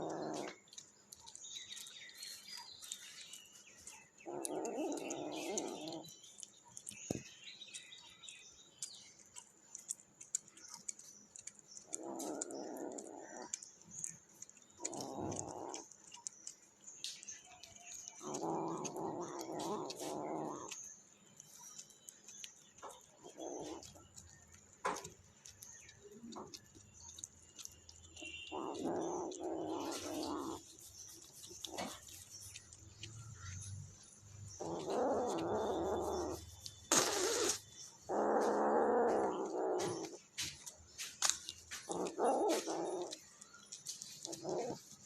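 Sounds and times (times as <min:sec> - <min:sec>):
kitten growling: 0:00.0 - 0:00.7, 0:04.2 - 0:06.1, 0:11.8 - 0:13.6, 0:14.8 - 0:16.0, 0:18.0 - 0:20.8, 0:23.2 - 0:24.3, 0:27.6 - 0:32.2, 0:34.6 - 0:40.2, 0:41.9 - 0:43.2, 0:44.2 - 0:44.9
kitten hissing: 0:34.7 - 0:38.4.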